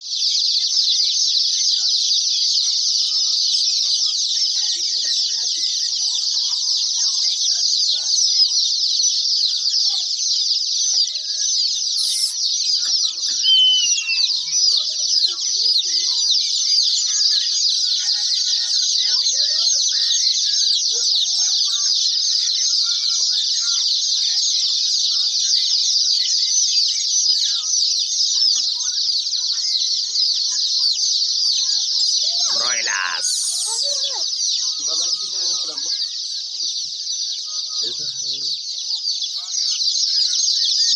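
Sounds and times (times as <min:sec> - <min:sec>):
chicks peeping: 0:00.0 - 0:40.9.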